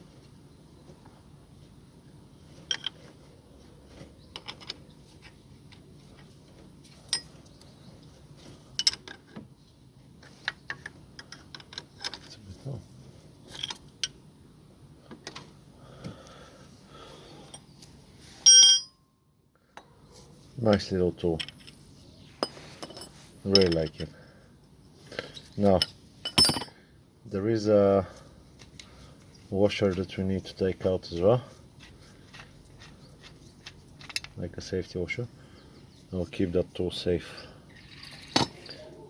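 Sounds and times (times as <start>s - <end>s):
ringing metal clink: 18.4s - 19.1s, 25.8s - 26.8s.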